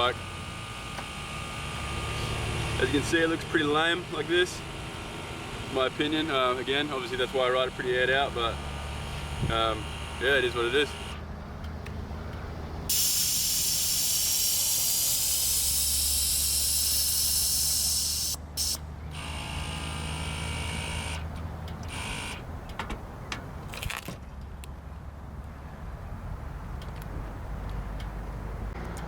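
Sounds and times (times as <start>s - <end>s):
air suspension hissing: 12.9s - 18.8s.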